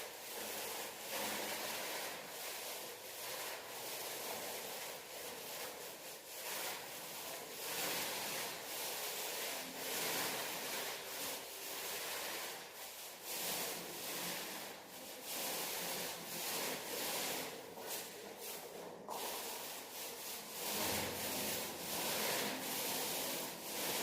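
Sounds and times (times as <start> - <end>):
paint rubbing strokes on wall: 0.0 - 24.0.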